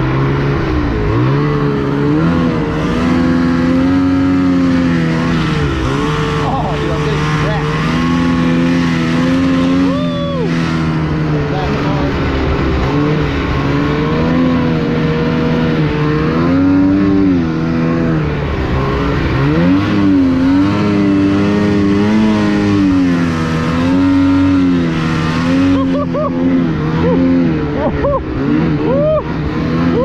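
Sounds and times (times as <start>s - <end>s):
snowmobile engine revving: 0.0s - 30.0s.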